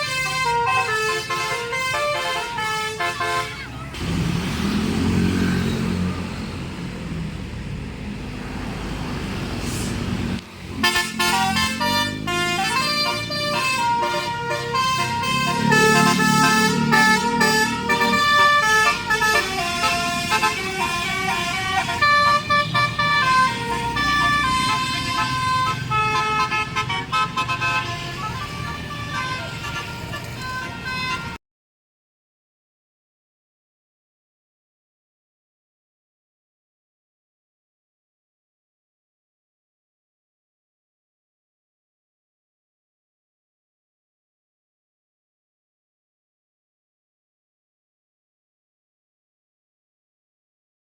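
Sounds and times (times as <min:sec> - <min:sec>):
multi-tone bus horn playing notes: 0:00.0 - 0:04.2, 0:10.7 - 0:31.4
bus engine running: 0:00.0 - 0:31.4
road and traffic noise: 0:00.0 - 0:31.4.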